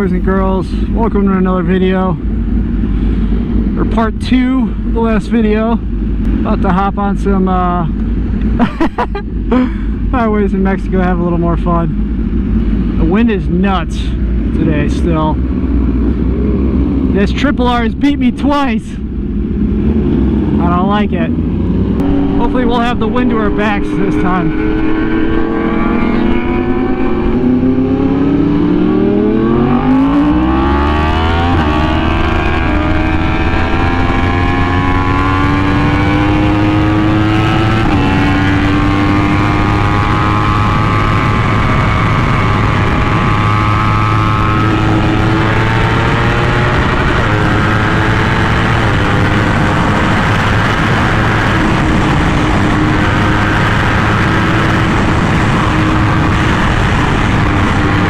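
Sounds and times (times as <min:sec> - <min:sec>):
motorcycle engine accelerating hard: 0:00.0 - 0:58.0
wind rush: 0:14.2 - 0:58.0.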